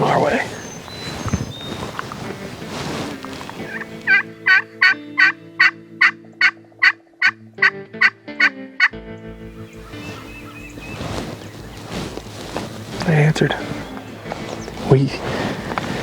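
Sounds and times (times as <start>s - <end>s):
soft background music: 0.0s - 16.0s
turkey call hen yelps: 3.7s - 7.4s.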